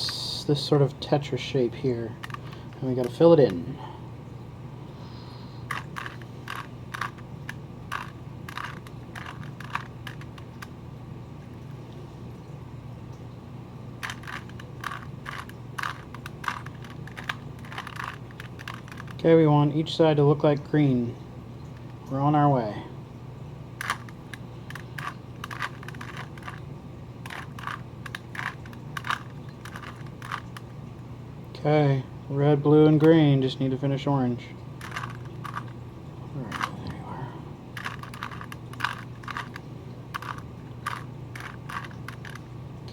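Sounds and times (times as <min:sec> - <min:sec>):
puzzle cube clicking turns: 0:02.2 - 0:03.6, 0:05.7 - 0:10.7, 0:14.0 - 0:19.2, 0:23.8 - 0:30.6, 0:34.8 - 0:35.7, 0:36.4 - 0:37.0, 0:37.8 - 0:42.4.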